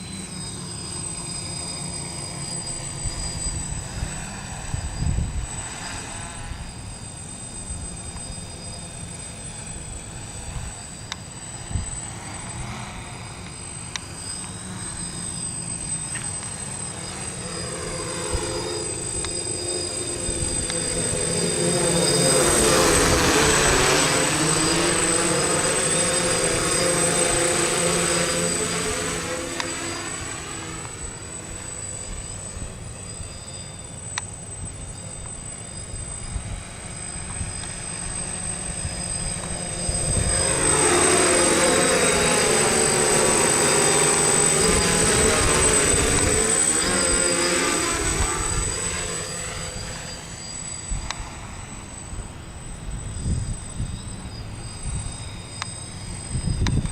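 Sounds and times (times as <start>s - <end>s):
drone propellers buzzing: 0.0s - 56.9s.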